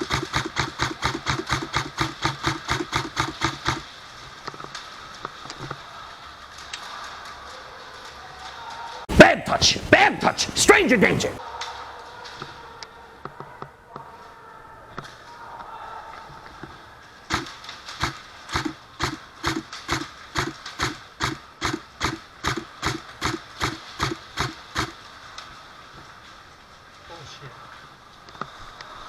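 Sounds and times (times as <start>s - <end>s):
sharp knocks: 0.0s - 3.8s, 17.3s - 25.0s
faint clicks: 0.0s - 9.0s, 14.9s - 26.1s, 28.2s - 29.0s.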